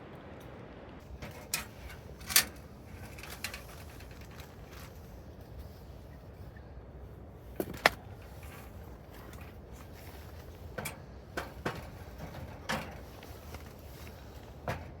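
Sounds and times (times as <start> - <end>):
knocks and clunks: 10.7 - 13.2.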